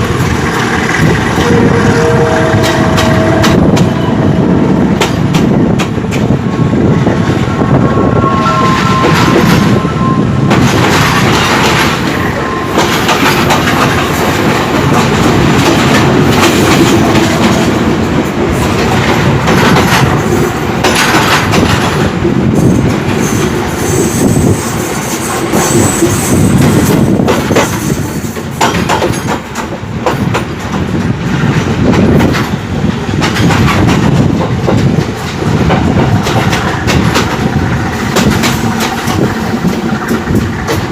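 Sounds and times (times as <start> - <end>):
train wheels clattering on rails: 0.0 - 40.9
high-pitched wheel squeal: 7.8 - 10.4.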